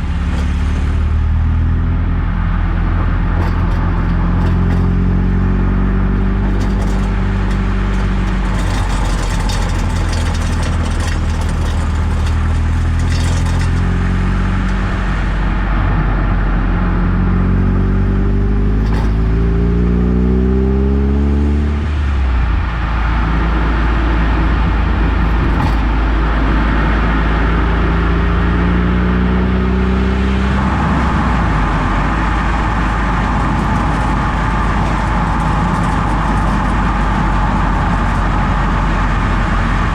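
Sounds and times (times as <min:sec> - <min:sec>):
rattling clatter: 0:00.0 - 0:15.6, 0:18.8 - 0:19.5, 0:23.2 - 0:29.0, 0:30.2 - 0:39.9
car engine revving while driving: 0:00.0 - 0:39.9
road noise: 0:00.0 - 0:39.9.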